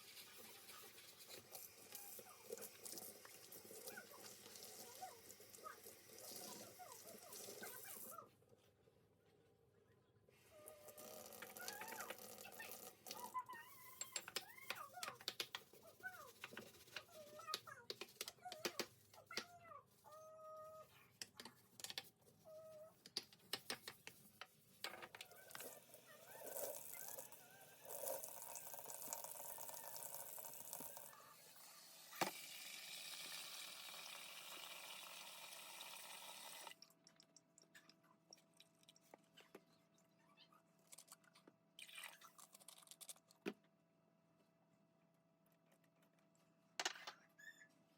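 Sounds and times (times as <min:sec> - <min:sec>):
clicks and squeaks: 0:46.9 - 0:47.9.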